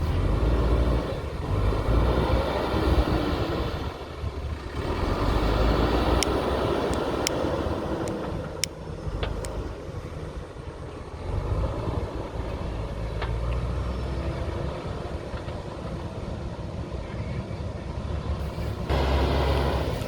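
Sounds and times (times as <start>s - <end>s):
diesel engine under load: 0.0s - 20.0s
sharp clicks: 6.1s - 7.4s, 8.0s - 9.6s.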